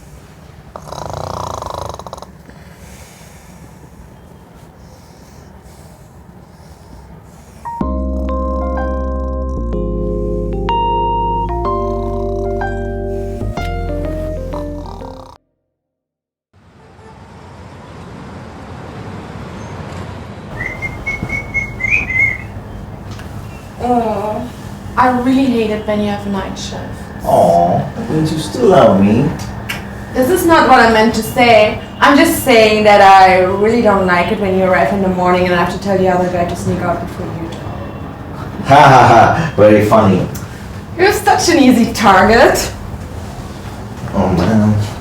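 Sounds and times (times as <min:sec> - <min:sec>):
person snoring: 0:00.7 - 0:02.4, 0:11.7 - 0:13.5, 0:14.4 - 0:15.4
low breathing: 0:02.2 - 0:07.9, 0:11.8 - 0:15.2
high thin whistling tone: 0:20.5 - 0:23.8.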